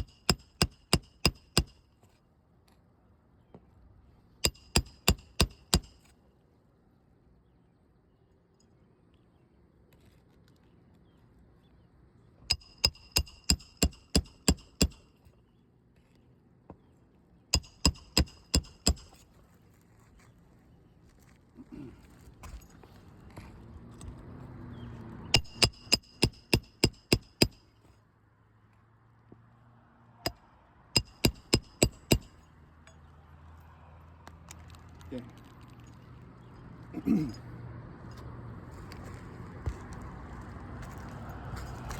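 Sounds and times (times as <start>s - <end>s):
hammer striking metal: 4.4s - 6.0s, 12.5s - 15.0s, 17.5s - 19.1s, 25.4s - 27.6s, 31.0s - 33.0s.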